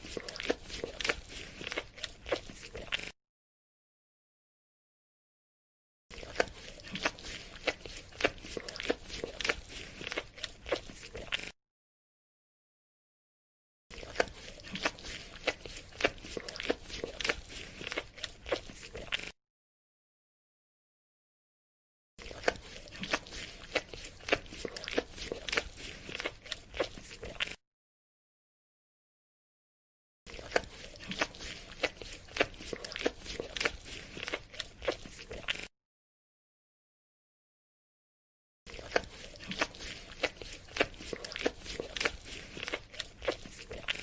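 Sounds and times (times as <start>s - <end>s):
dog licking: 30.3s - 35.7s, 38.7s - 44.0s.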